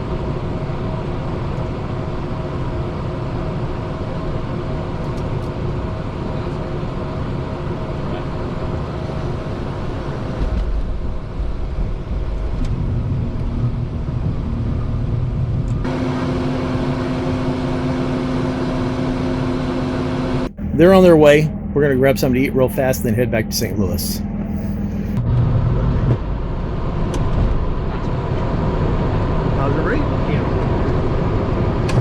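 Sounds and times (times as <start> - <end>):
machine drone: 5.8 - 27.1
deep rumble: 10.4 - 15.9, 20.4 - 27.0.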